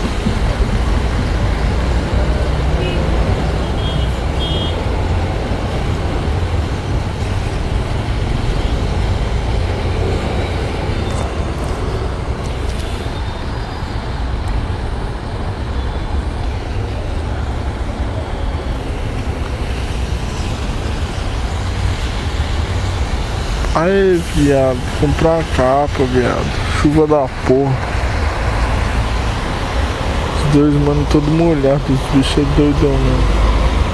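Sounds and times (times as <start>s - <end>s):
motorcycle engine rumbling: 0.0s - 8.4s
wind and road noise: 0.0s - 33.9s.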